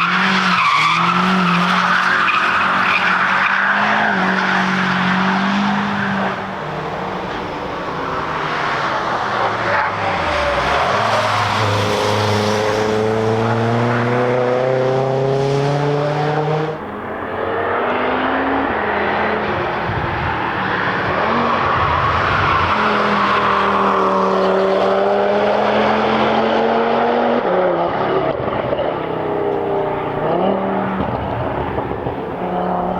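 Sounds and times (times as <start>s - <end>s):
race cars passing at speed: 0.0s - 32.9s.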